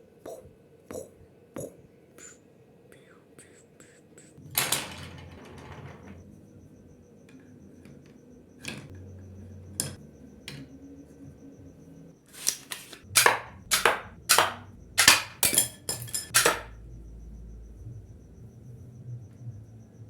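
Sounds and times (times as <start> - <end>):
sharp ringing cracks: 13.2 - 16.8.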